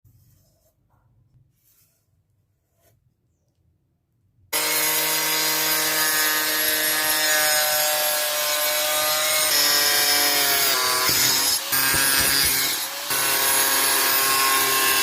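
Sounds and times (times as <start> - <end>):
electric power tool buzzing on wood: 4.6 - 15.0.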